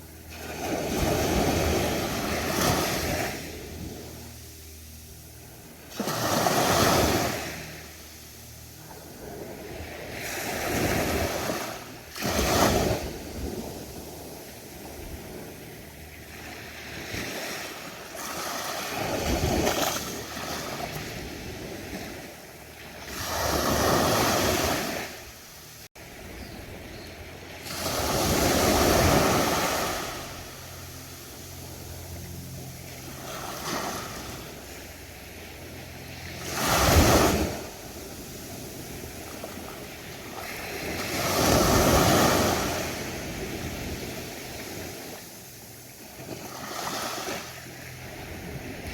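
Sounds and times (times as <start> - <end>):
ocean waves breaking on beach: 0.0 - 48.9
hiss of surf: 27.4 - 48.9.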